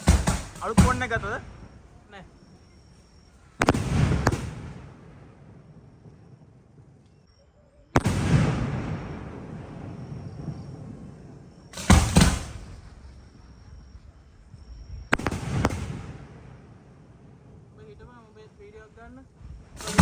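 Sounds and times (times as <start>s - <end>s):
rumbling echo: 0.0s - 7.0s
firework shells booming: 0.0s - 7.3s, 8.0s - 17.8s, 19.3s - 20.0s.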